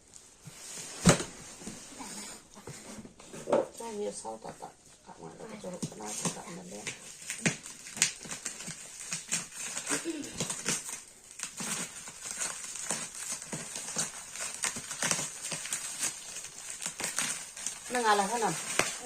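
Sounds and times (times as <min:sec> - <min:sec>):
package being handled and opened: 0:05.6 - 0:19.0.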